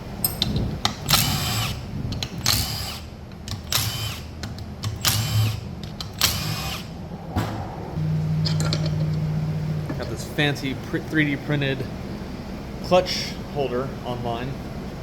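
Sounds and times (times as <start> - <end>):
impact wrench whining: 0.4 - 7.0.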